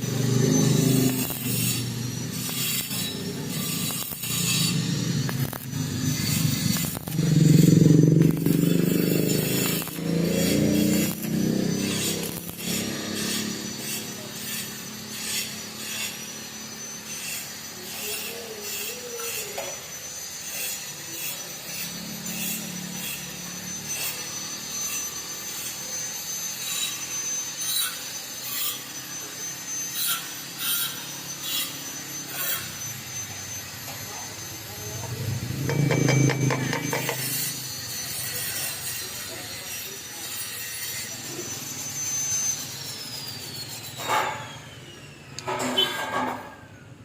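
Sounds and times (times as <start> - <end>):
welding arc crackling and popping: 0.0 - 14.0
faint high whine: 0.0 - 47.0.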